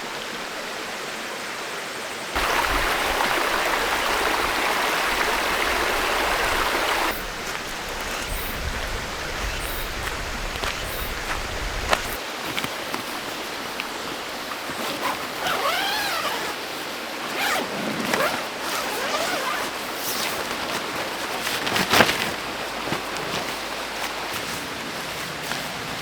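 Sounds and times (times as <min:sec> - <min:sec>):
steady water noise: 0:00.0 - 0:26.0
zipper being pulled: 0:14.7 - 0:16.6, 0:17.3 - 0:23.6.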